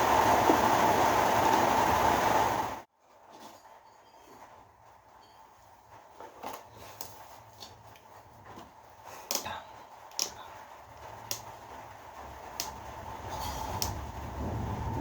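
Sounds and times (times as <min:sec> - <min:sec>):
sharp clicks and taps: 0:11.0 - 0:11.6.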